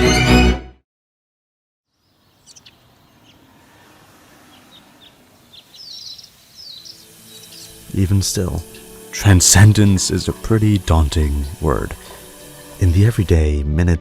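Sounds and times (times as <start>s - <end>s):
music: 0.0s - 0.8s, 6.9s - 14.0s
birds chirping: 1.9s - 13.3s.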